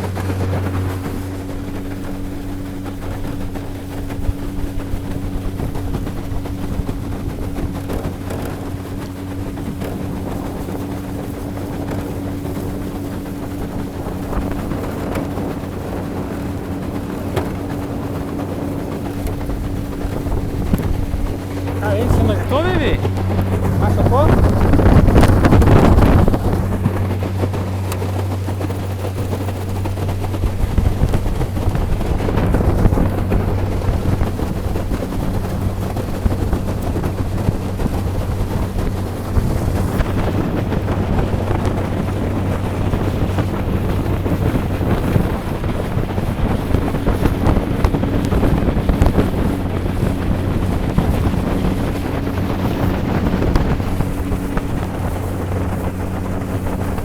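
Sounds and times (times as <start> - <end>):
outboard motor running: 0.0 - 57.0
wind buffeting microphone: 0.0 - 57.0.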